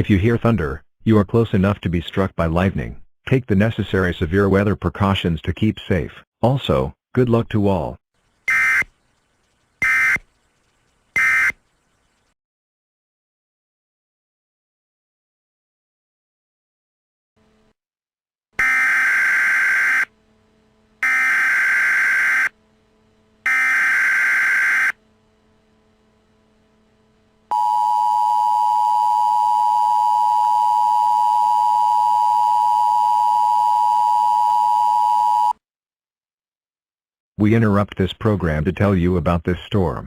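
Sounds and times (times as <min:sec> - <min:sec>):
screechy digital data bursts: 0:09.5 - 0:11.6.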